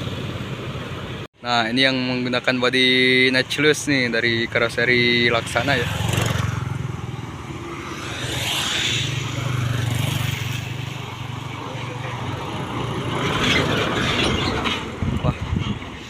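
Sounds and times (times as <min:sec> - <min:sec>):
bus engine hum: 0:00.0 - 0:01.3, 0:06.2 - 0:16.0
road noise: 0:00.0 - 0:16.0.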